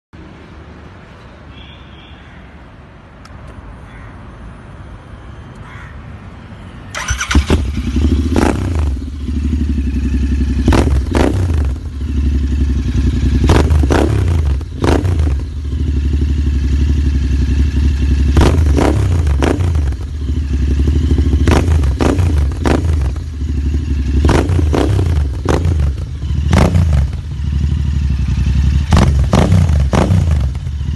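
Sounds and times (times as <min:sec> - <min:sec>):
sharp throttle blips: 0:06.9 - 0:09.0
motorcycle engine idling: 0:07.0 - 0:30.9.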